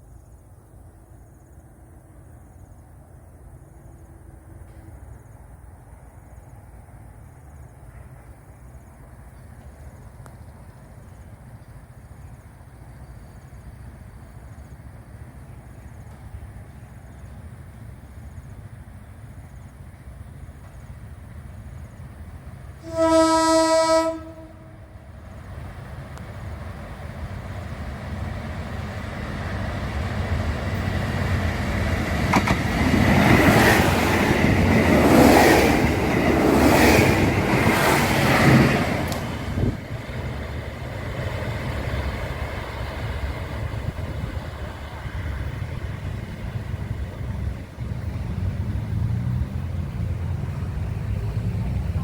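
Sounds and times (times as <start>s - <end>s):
train rumble and wheel clatter: 0.0s - 52.0s
diesel train horn: 22.8s - 25.2s.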